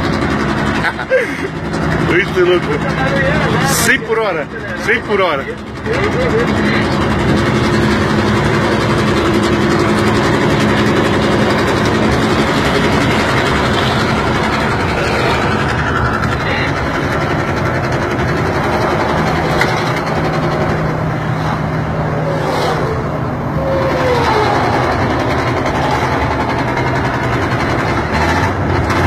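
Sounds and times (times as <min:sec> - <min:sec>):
road noise: 0:00.0 - 0:29.0
truck engine running: 0:00.0 - 0:29.0
wind: 0:00.0 - 0:29.0.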